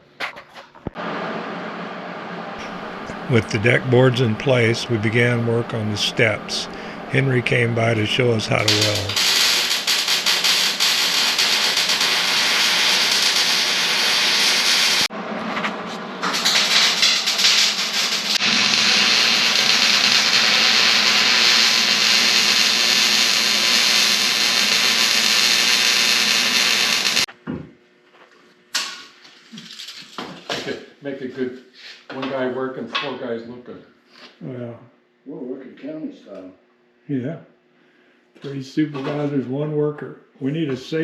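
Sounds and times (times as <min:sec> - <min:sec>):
arc welding crackling hiss: 0:02.6 - 0:15.1, 0:16.2 - 0:27.3.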